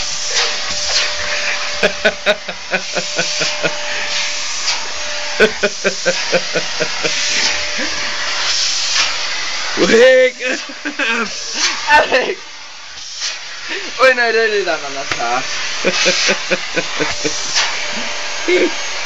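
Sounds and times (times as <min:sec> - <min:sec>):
vacuum cleaner whining: 0:00.0 - 0:19.0
person giggling: 0:01.4 - 0:04.0, 0:05.4 - 0:08.1, 0:10.4 - 0:12.4, 0:15.8 - 0:17.4, 0:18.0 - 0:18.8.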